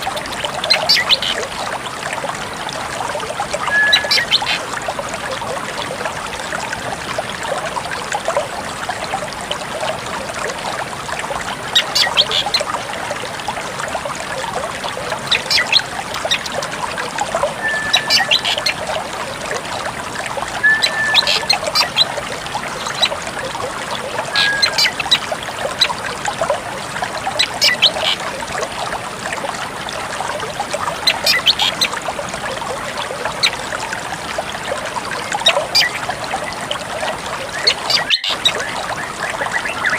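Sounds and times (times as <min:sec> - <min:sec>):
running water trickling: 0:00.0 - 0:39.9
bird calling sharp high notes: 0:03.7 - 0:04.6, 0:17.6 - 0:18.7, 0:20.6 - 0:21.6, 0:24.3 - 0:25.0.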